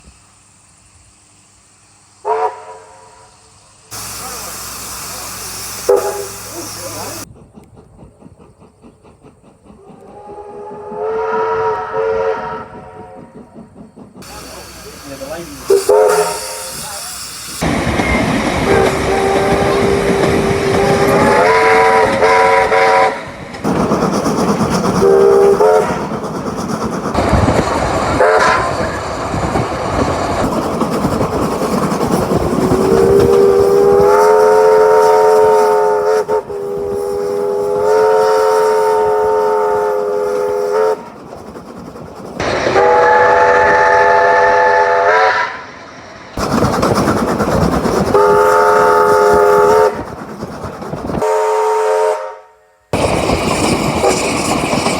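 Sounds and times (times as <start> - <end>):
steam hissing: 0.0 - 52.3, 52.9 - 54.9
steam chime whistle blasts: 2.2 - 7.3, 10.1 - 13.1, 14.2 - 23.2, 25.0 - 26.0, 32.8 - 41.1, 42.6 - 45.6, 48.2 - 50.0.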